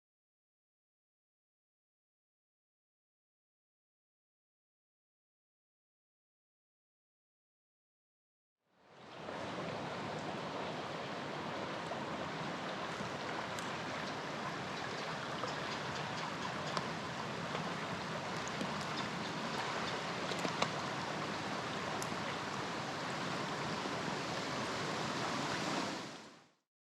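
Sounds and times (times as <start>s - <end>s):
creek water rushing over rapids: 8.8s - 26.4s
faint ticks and splashes: 9.0s - 25.8s.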